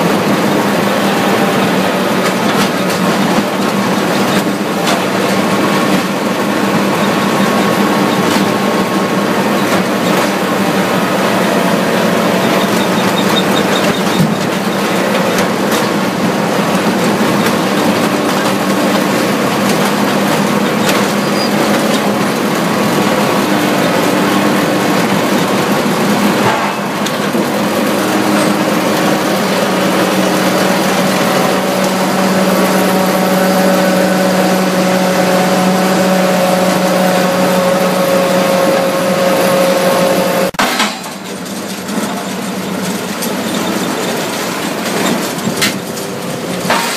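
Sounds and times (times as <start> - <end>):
machine drone: 0.0 - 46.9.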